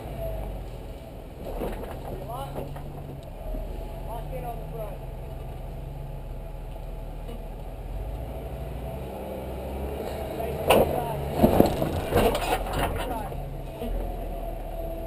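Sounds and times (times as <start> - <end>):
engine running at low revs: 0.0 - 15.0
loud knocks and clunks: 1.4 - 3.3, 10.6 - 13.4.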